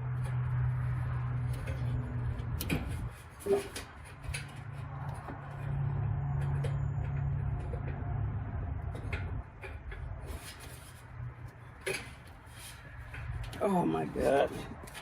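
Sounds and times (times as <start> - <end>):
clicks and knocks of parts handled: 8.8 - 13.6.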